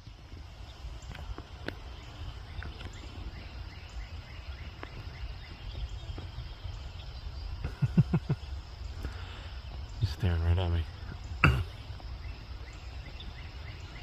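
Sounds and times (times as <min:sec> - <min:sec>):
faint bird chirps: 0:00.0 - 0:14.0.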